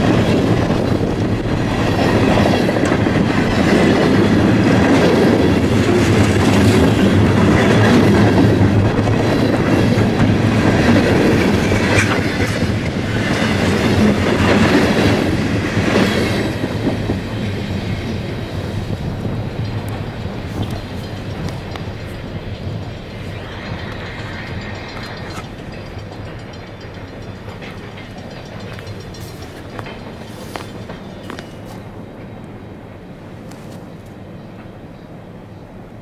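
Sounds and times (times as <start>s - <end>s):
wheels clicking over rail joints: 0.0s - 32.6s
freight train cars rolling past: 0.0s - 36.0s.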